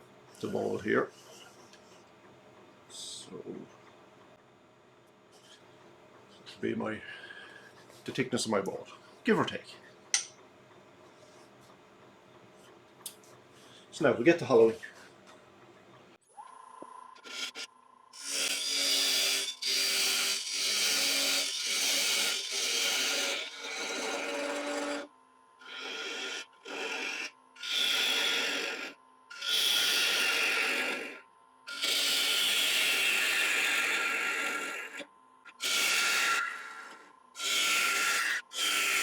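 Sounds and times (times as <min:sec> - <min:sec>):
faint steady hum: 0:00.0 - 0:18.8, 0:20.8 - 0:37.4
wood lathe tool cutting: 0:17.2 - 0:35.0, 0:35.6 - 0:39.0.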